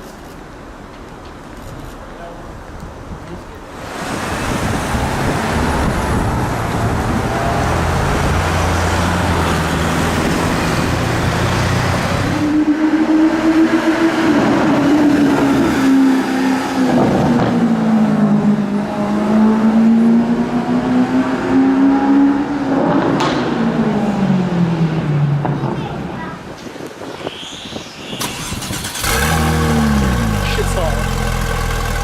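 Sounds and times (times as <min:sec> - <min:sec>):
car accelerating hard: 0:04.1 - 0:24.5, 0:28.3 - 0:32.0
high engine note revving down: 0:28.3 - 0:32.0.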